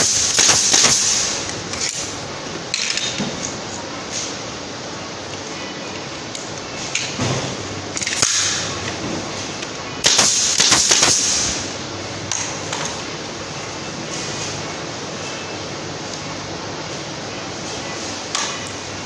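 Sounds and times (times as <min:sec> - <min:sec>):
pneumatic nail gun shots: 0:00.0 - 0:01.4, 0:10.0 - 0:11.6
steady background noise: 0:00.0 - 0:19.0.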